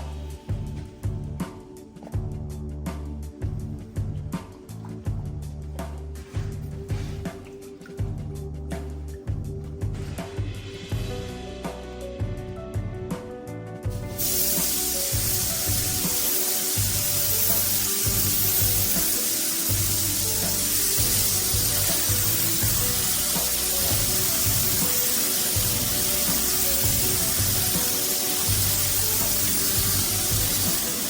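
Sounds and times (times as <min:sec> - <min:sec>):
background music: 0:00.0 - 0:31.0
hiss of spraying air: 0:14.0 - 0:31.0.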